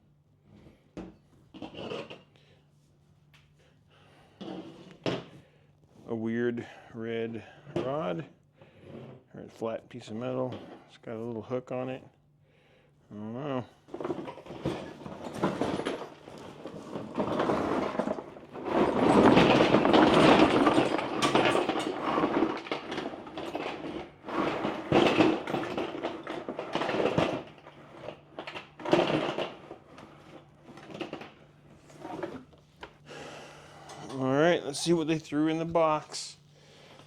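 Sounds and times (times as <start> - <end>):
metal junk clattering and scraping: 13.9 - 32.5
metal knocks and clanks: 14.1 - 27.6.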